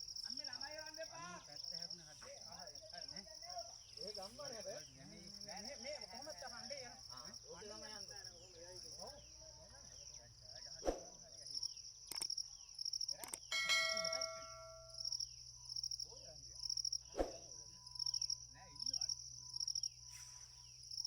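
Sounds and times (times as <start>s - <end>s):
insects chirping: 0.0s - 21.0s
ringing metallic clang: 13.5s - 15.0s.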